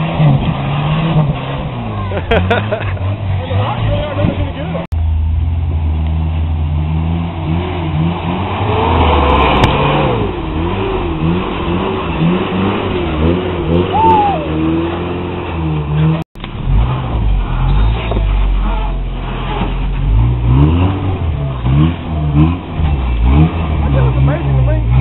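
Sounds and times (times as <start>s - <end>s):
engine revving in throttle blips: 0.0s - 25.0s.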